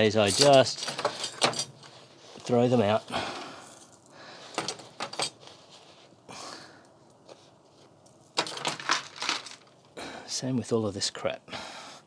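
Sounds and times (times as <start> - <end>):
metal screws clinking and rattling: 0.2 - 2.0, 2.8 - 5.4, 8.3 - 9.8.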